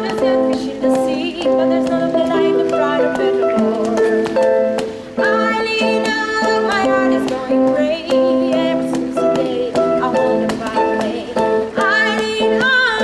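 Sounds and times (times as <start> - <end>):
person singing: 0.0 - 13.0
plucked string notes: 0.0 - 13.0.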